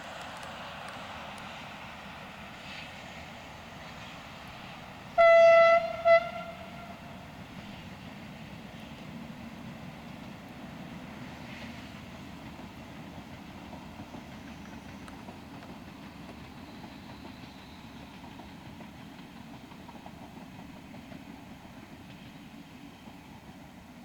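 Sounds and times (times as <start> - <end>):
train running on track: 0.0 - 24.0
faint clicks: 0.2 - 1.5, 14.7 - 15.8.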